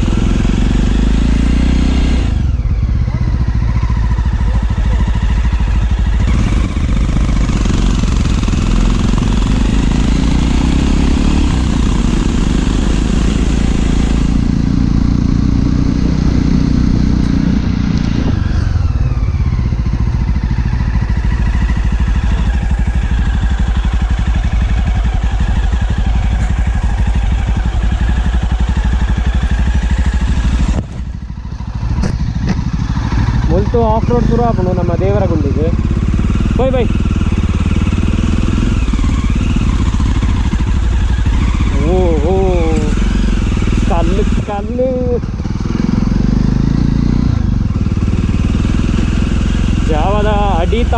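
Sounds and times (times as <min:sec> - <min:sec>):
motorcycle engine running: 0:00.0 - 0:50.9.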